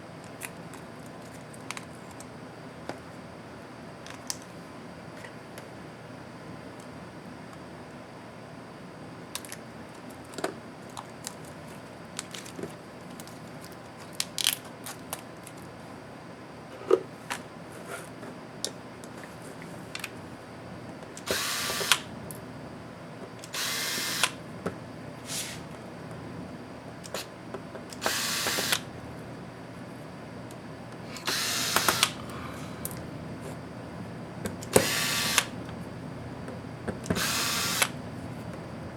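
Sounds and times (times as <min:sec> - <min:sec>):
power screwdriver whirring: 0:21.2 - 0:22.1, 0:23.4 - 0:24.4, 0:28.0 - 0:28.9, 0:31.2 - 0:32.2, 0:34.6 - 0:35.5, 0:37.1 - 0:38.0.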